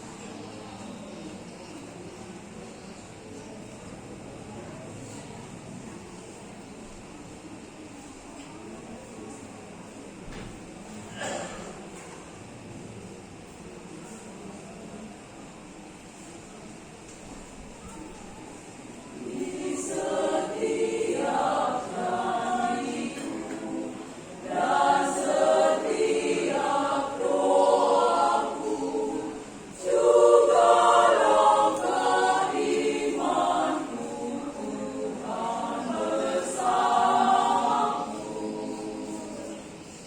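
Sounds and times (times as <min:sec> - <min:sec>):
choir singing: 0:19.1 - 0:40.0.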